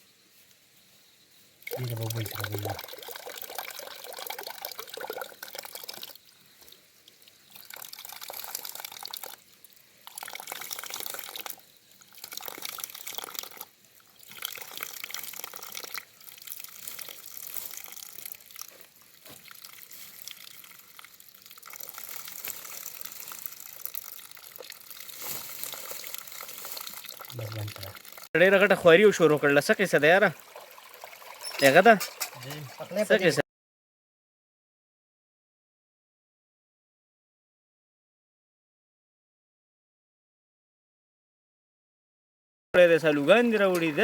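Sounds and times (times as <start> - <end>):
water running and splashing: 1.6 - 33.4.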